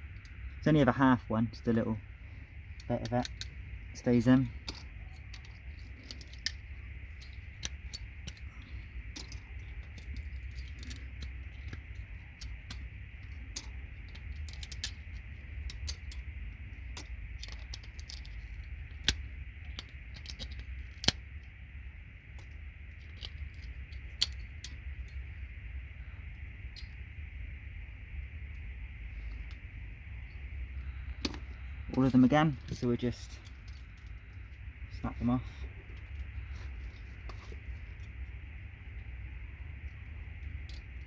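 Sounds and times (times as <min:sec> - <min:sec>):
steady low hum: 0:00.0 - 0:41.0
metal pins and plastic clicking: 0:02.7 - 0:21.5, 0:22.3 - 0:25.2, 0:39.8 - 0:41.0.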